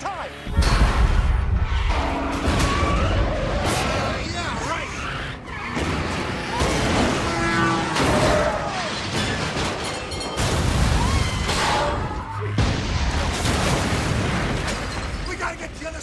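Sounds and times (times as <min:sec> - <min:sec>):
crashing destruction effects: 0:05.7 - 0:15.3.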